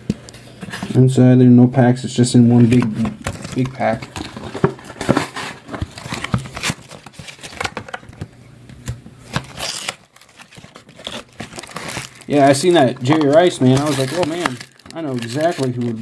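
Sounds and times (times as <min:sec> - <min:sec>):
plastic wrapper crinkling: 0:02.6 - 0:08.3, 0:09.3 - 0:16.0.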